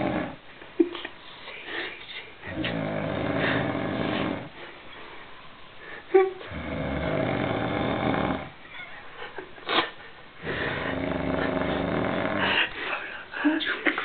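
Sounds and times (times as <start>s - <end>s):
man snoring: 0.0s - 0.4s, 2.5s - 4.5s, 6.5s - 8.6s, 10.6s - 12.5s.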